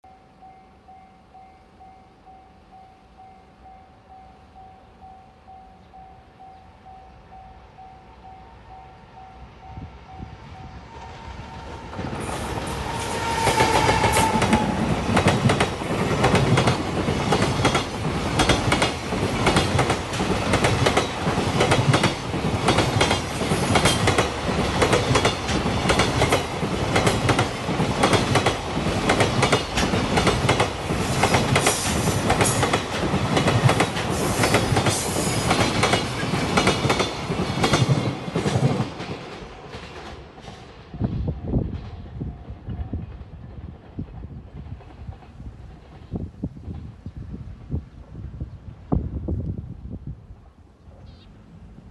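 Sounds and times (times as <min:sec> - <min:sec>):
level crossing warning bell: 0:00.0 - 0:10.8
train wheels clacking over rail joints: 0:12.1 - 0:40.8
locomotive horn blast: 0:12.8 - 0:15.0.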